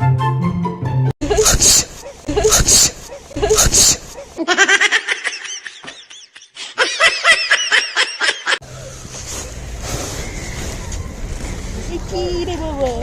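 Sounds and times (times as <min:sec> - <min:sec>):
high-pitched rapid giggling: 0:01.2 - 0:08.6.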